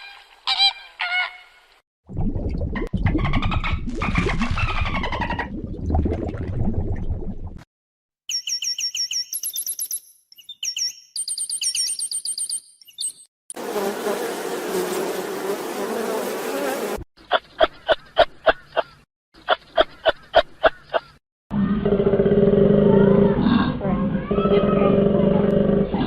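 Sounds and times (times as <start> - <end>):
high thin chirping calls: 8.3 - 13.2
dense insect buzzing: 13.5 - 17.0.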